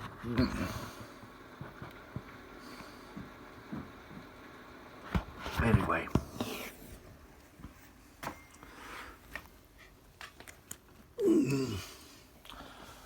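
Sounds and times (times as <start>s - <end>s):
faint clicks and taps: 1.3s - 6.6s, 9.3s - 11.1s.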